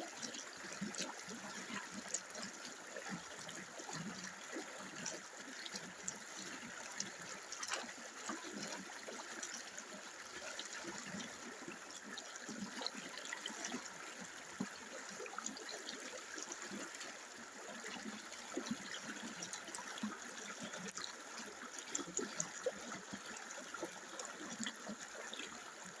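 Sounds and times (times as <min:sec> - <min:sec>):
small water splashes: 0:00.0 - 0:26.0.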